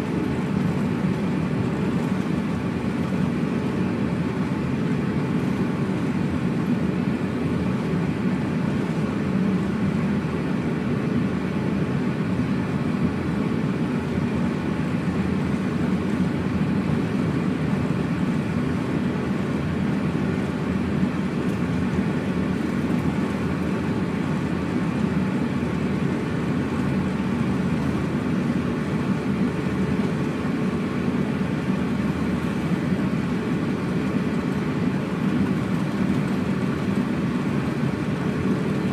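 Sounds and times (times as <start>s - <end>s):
airplane cabin rumble: 0.0s - 38.9s.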